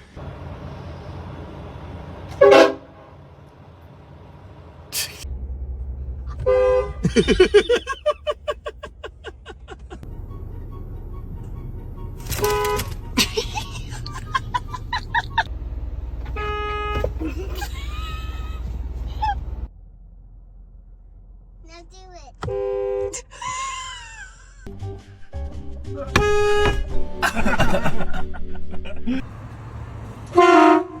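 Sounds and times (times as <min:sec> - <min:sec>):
car horn blasts: 0:02.4 - 0:03.1, 0:06.3 - 0:07.4, 0:10.3 - 0:13.2, 0:16.2 - 0:17.2, 0:22.4 - 0:23.2, 0:26.1 - 0:26.9, 0:30.3 - 0:31.0
low steady rumble: 0:02.6 - 0:12.3, 0:12.9 - 0:24.7.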